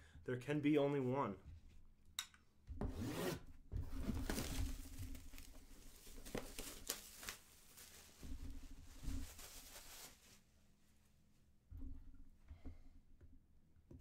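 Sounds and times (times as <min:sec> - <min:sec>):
packaging ripping and crackling: 0:04.2 - 0:08.2.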